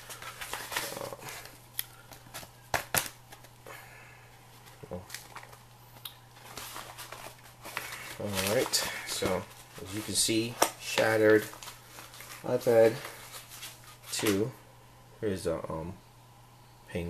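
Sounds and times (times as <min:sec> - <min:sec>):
steady low hum: 0:00.0 - 0:17.0
rustling: 0:06.4 - 0:14.5.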